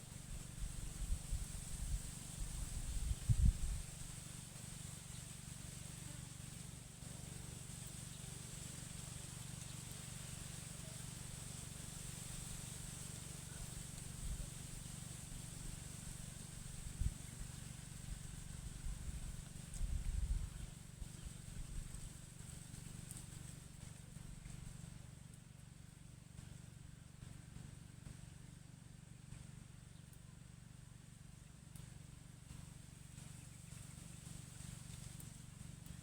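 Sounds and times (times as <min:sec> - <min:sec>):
steady low rumble: 0:16.5 - 0:22.7.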